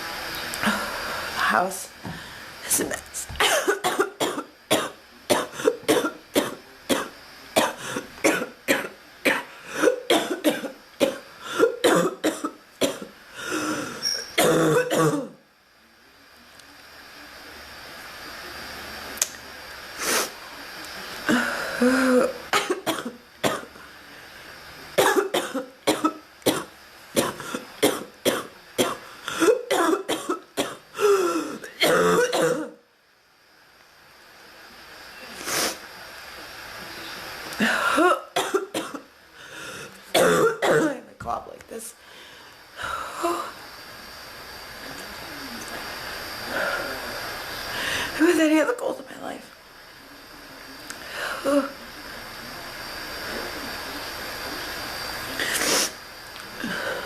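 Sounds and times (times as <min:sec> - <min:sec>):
woman coughing: 0:03.4 - 0:13.1, 0:14.4 - 0:15.4, 0:21.8 - 0:23.7, 0:25.0 - 0:32.8, 0:37.6 - 0:39.0, 0:40.2 - 0:41.1.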